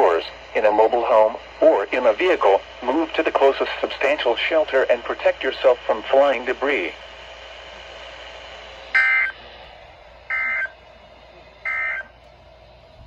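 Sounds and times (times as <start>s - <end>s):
two-pitch digital data tones: 9.0s - 9.4s, 10.3s - 10.7s, 11.7s - 12.1s.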